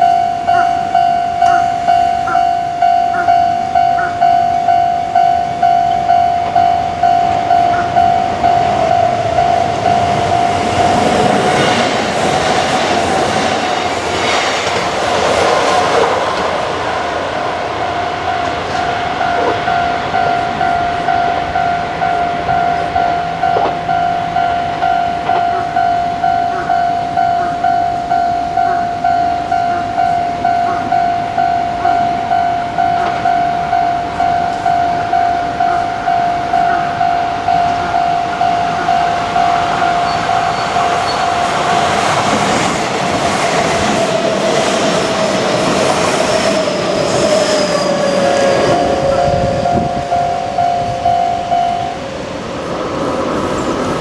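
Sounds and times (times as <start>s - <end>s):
level crossing bell ringing: 0.0s - 11.9s, 16.9s - 42.1s, 47.9s - 52.2s
train wheels rumbling on rails: 0.0s - 54.0s.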